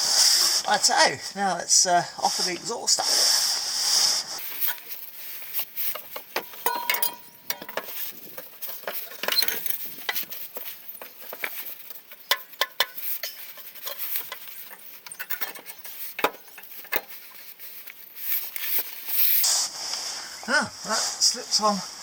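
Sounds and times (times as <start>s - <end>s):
exhaust pipe clinking and knocking: 6.0s - 17.3s.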